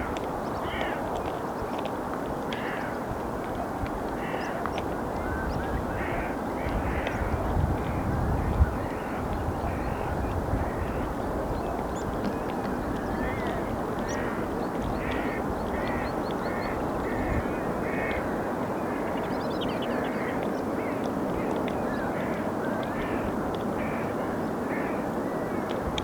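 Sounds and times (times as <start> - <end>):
shorebirds calling: 8.7 - 25.6.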